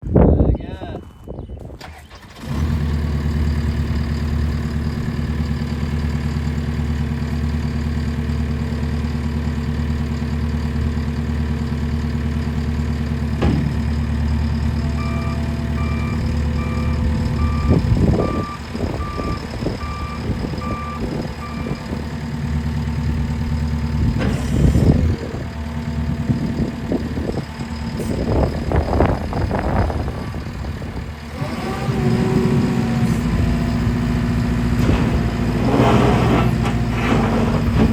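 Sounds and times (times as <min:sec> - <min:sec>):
diesel engine running: 0:01.7 - 0:37.9
machine clanks and knocks: 0:13.4 - 0:13.9
reversing alarm beeping: 0:14.7 - 0:22.0.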